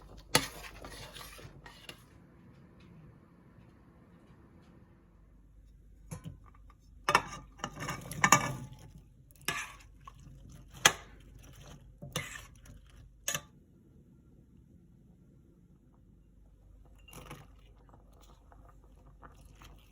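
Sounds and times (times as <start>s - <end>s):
utensil scraping against pot: 0.0s - 2.1s, 7.0s - 13.4s.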